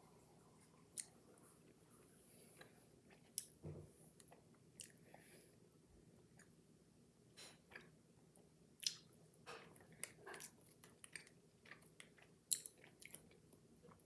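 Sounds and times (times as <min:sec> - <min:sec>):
person chewing gummy candy: 0:09.8 - 0:14.0.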